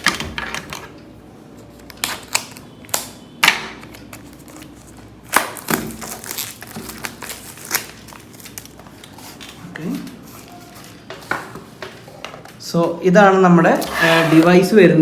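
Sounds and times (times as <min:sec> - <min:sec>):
packaging clicks and rustles: 0:01.7 - 0:11.2.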